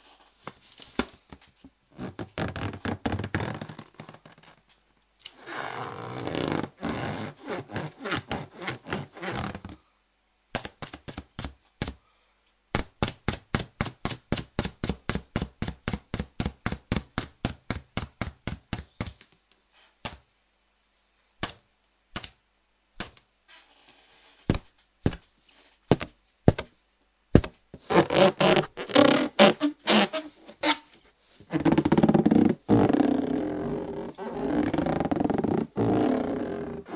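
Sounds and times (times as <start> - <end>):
fingers squeaking on a balloon: 2.0 - 4.6, 5.4 - 9.8, 27.8 - 36.9.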